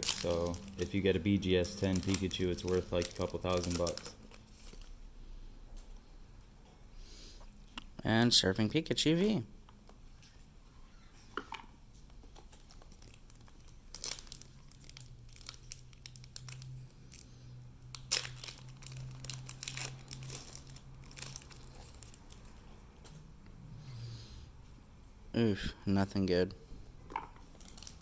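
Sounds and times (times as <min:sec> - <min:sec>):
cards rustling: 0:00.0 - 0:05.0
foil wrapper crinkling and tearing: 0:00.0 - 0:05.0, 0:12.4 - 0:17.3, 0:17.9 - 0:22.6, 0:27.5 - 0:28.0.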